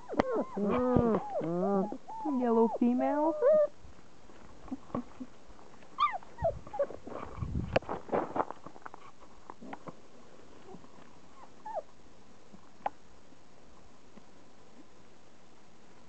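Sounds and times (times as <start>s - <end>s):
puppies whimpering: 0.0s - 3.8s, 6.0s - 7.4s, 10.7s - 11.9s
scuffling knocks and clicks: 6.7s - 10.0s.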